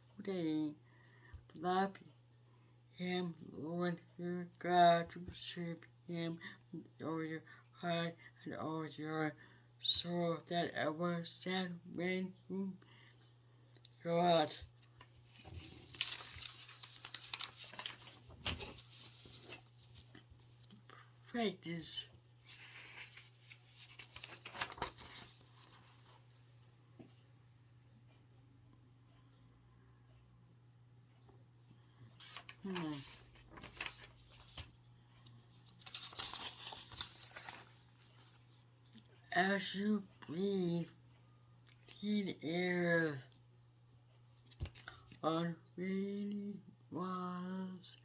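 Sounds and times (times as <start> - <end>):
low electrical hum: 0.0 - 48.0
rustling and crackling: 14.8 - 20.8
rustling and crinkling: 14.8 - 20.9, 22.4 - 26.5, 32.2 - 38.6.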